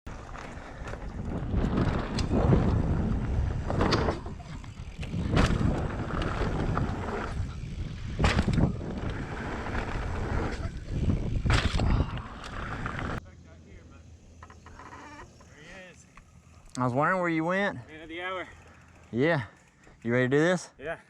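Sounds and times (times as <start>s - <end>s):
rumbling tyre noise: 0.1s - 13.2s
wind buffeting microphone: 0.5s - 13.2s.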